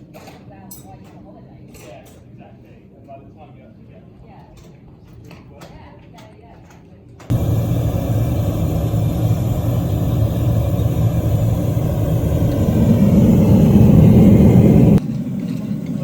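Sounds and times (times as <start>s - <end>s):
loud low rumbling noise: 7.3s - 15.0s.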